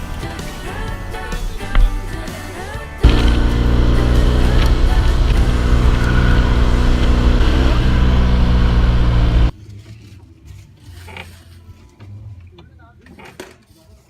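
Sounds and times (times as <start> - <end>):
motorcycle engine running: 1.1 - 9.5.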